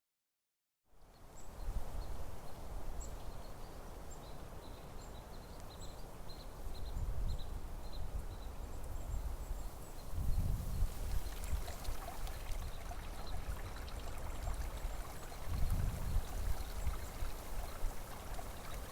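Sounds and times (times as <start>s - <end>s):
small birds chirping: 1.0s - 18.9s
wind rumbling on microphone: 5.8s - 18.9s.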